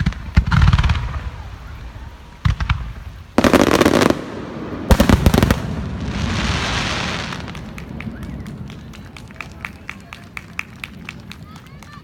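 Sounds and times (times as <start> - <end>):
firework crackling: 0.0 - 12.0
firework bang: 2.4 - 8.3.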